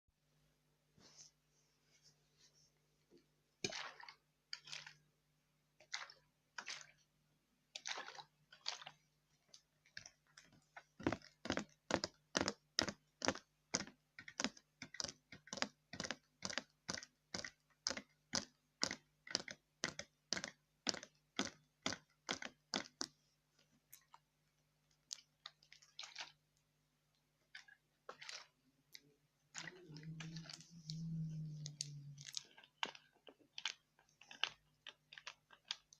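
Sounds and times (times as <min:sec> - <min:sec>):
crisp strokes near microphone: 0:29.6 - 0:32.4.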